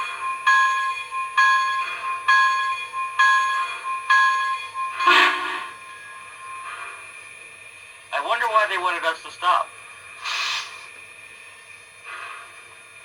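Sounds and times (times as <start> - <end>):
steam locomotive bell: 0.0 - 8.7
steam hiss: 10.2 - 13.0.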